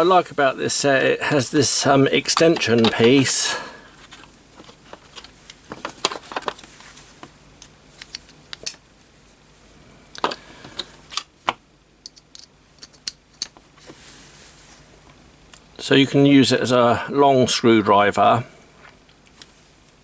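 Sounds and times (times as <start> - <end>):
small metal parts clicking: 12.0 - 13.6.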